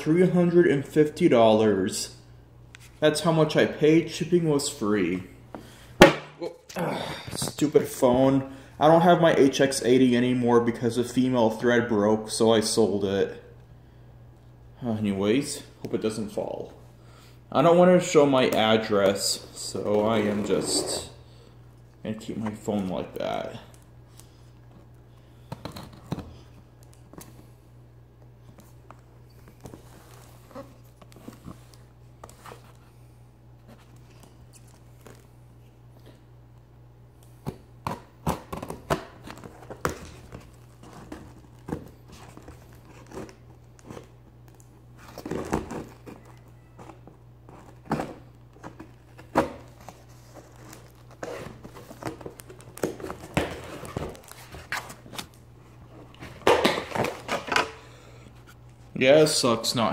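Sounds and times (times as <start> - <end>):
steady low hum: 0.0 - 59.9
cardboard and plastic rustling: 38.4 - 57.7.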